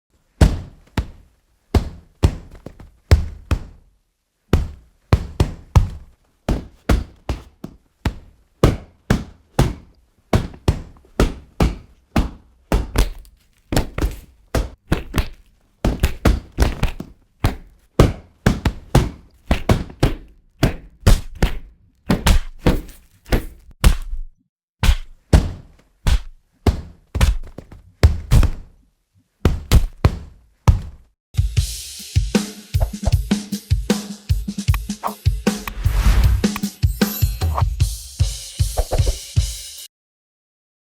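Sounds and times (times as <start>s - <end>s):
boxing punches landing: 0.4s - 3.8s, 4.5s - 28.8s, 29.4s - 31.0s.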